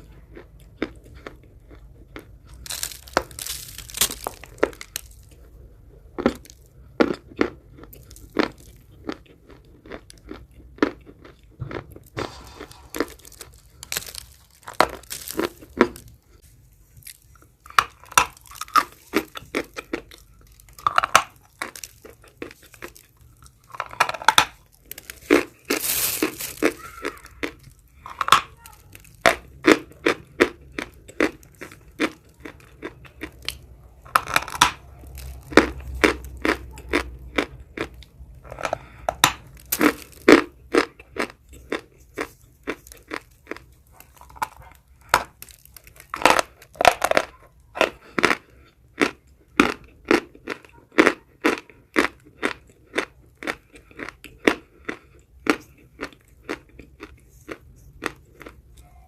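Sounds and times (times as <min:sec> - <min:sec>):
person chewing chalk: 0:00.0 - 0:59.0.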